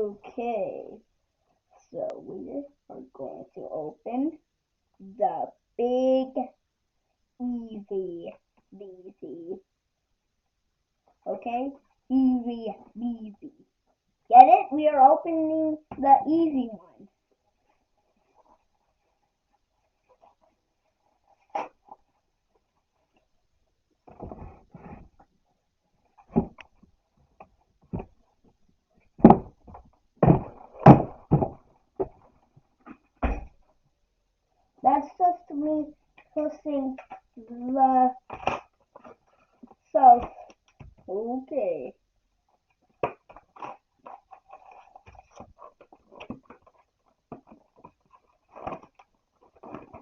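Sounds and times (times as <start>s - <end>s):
card packs rustling and crinkling: 43.0s - 50.0s.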